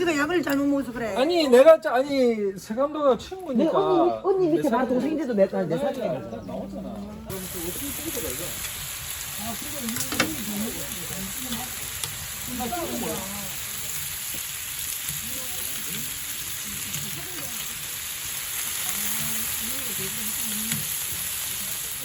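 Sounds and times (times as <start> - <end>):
faint voices talking: 2.9 - 22.0
meat sizzling on hot plate: 7.3 - 22.0.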